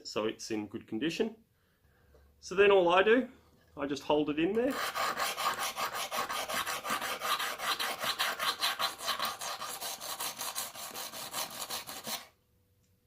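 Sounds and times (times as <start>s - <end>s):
hone stone rasping on blade: 4.6s - 12.3s.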